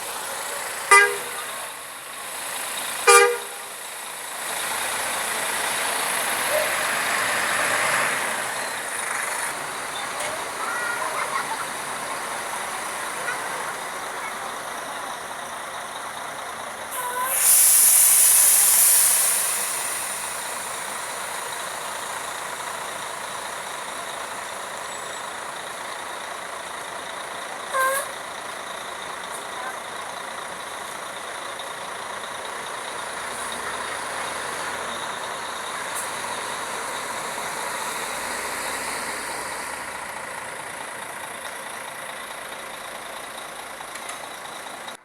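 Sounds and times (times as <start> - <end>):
road and engine noise: 0.0 - 45.0
bus air brakes hissing: 16.8 - 23.3.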